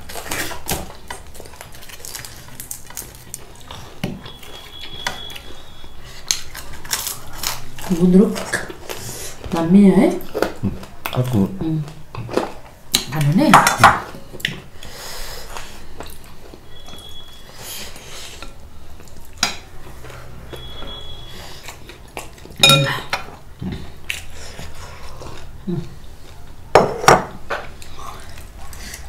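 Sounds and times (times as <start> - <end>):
low background noise: 0.0 - 29.0
high ringing tones: 22.6 - 23.1
cutlery and dishes clinking: 22.6 - 23.3.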